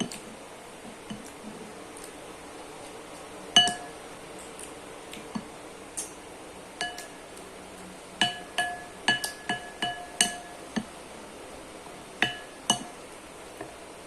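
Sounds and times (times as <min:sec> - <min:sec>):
utensil clinking against a bowl: 0:03.6 - 0:04.0, 0:06.8 - 0:07.2, 0:08.2 - 0:10.6, 0:12.2 - 0:12.9.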